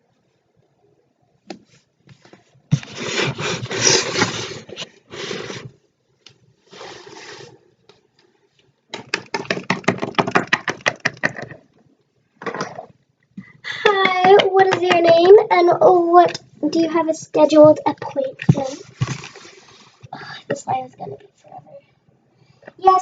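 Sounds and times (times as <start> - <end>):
plastic toys scraping and rubbing: 2.7 - 5.8, 6.7 - 7.6, 17.5 - 20.0
plastic toys tapping: 8.9 - 11.7, 13.8 - 15.6.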